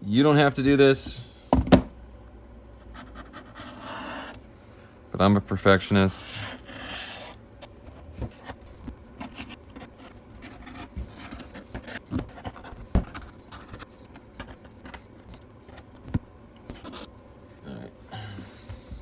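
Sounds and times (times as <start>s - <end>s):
knife blade scratching: 6.2s - 8.6s.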